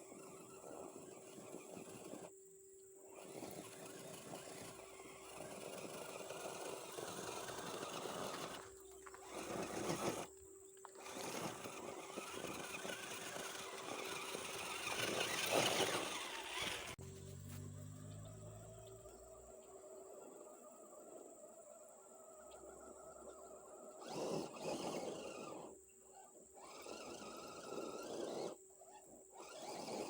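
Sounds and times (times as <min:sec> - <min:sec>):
electric motor and gearbox whining: 0:00.0 - 0:02.3, 0:03.0 - 0:20.7, 0:22.4 - 0:30.0
tyres scrabbling over ground: 0:03.2 - 0:18.7.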